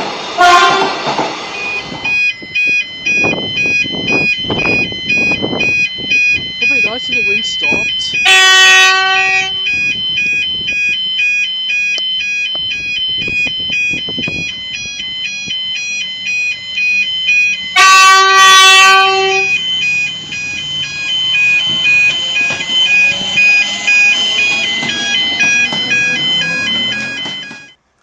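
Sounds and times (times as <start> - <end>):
passing train rushing: 0.0 - 27.8
train horn blast: 0.4 - 1.0, 8.2 - 9.6, 17.8 - 19.5
crossing bells ringing: 0.4 - 27.8.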